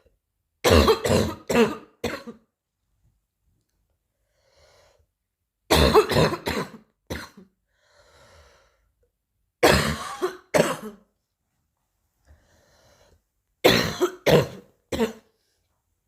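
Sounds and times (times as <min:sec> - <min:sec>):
person coughing: 0:00.6 - 0:02.5, 0:05.7 - 0:07.5, 0:09.6 - 0:11.1, 0:13.6 - 0:15.3.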